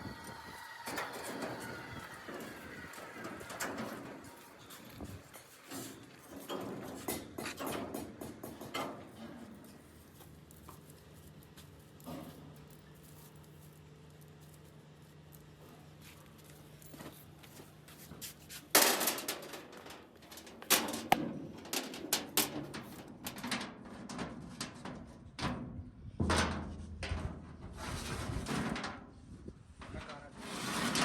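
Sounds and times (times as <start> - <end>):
low hum: 0.0 - 5.5
knocks and clanks: 0.0 - 9.7.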